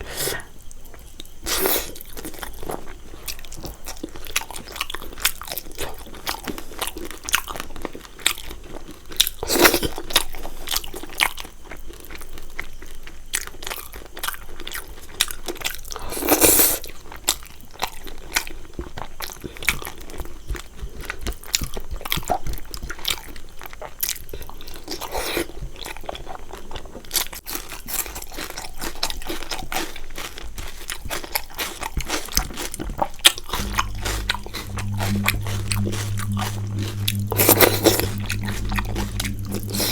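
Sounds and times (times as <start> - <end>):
chewing with crunches: 28.0 - 39.9
low steady hum: 33.6 - 39.9.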